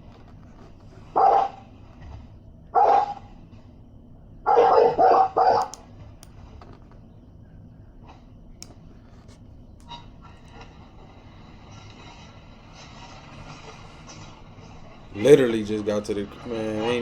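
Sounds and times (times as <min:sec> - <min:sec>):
dog barking: 0:01.1 - 0:01.6, 0:02.8 - 0:03.3, 0:04.5 - 0:05.7.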